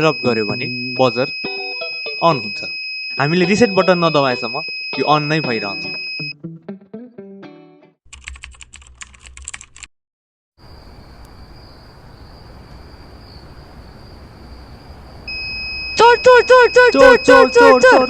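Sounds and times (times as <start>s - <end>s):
rapid irregular clicking: 8.1s - 9.9s
thin high whine: 15.3s - 18.0s.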